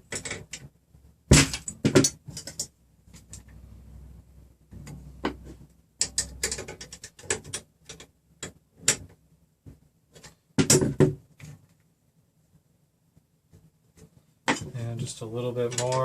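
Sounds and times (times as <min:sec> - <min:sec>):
small metal hardware clicking: 0:06.0 - 0:09.0.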